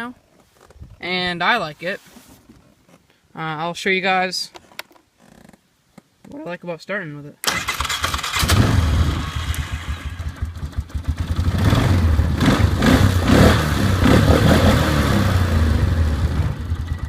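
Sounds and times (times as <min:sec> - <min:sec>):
atv engine running: 0:08.3 - 0:17.0.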